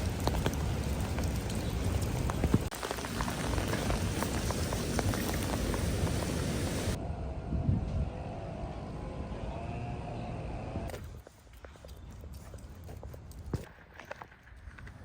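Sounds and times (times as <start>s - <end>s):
rain hissing: 0.0s - 7.0s
raindrop ticks: 0.0s - 7.0s.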